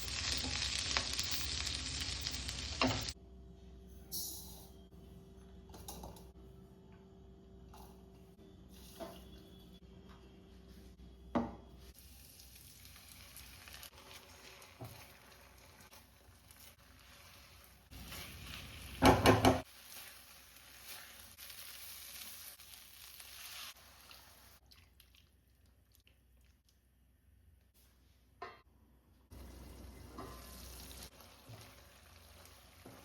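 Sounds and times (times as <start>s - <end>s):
food sizzling in a frying pan: 0.0s - 3.2s, 12.0s - 24.6s, 29.3s - 33.0s.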